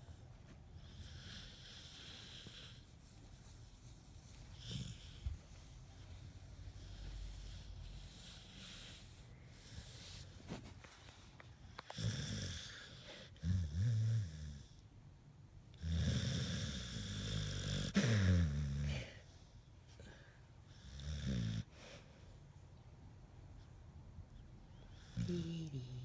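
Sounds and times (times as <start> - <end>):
dog snoring: 4.6 - 5.4, 11.8 - 14.8, 15.8 - 19.3, 20.7 - 21.7, 24.9 - 26.0.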